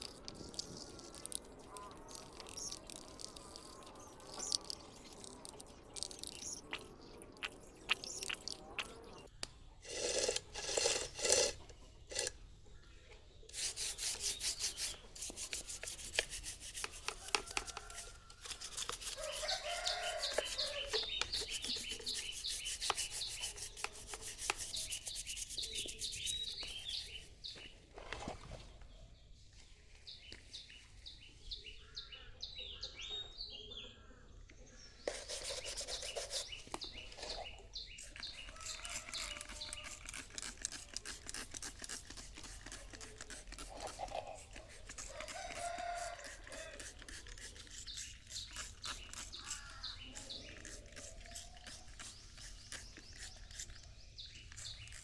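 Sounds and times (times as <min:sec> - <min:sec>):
rubbing strokes: 0:13.5 - 0:27.4, 0:35.1 - 0:53.8.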